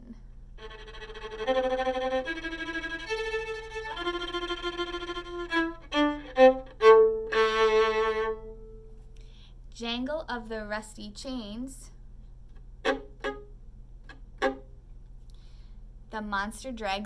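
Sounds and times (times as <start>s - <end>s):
solo violin bowed: 0.6s - 8.9s, 12.8s - 13.5s, 14.1s - 14.7s.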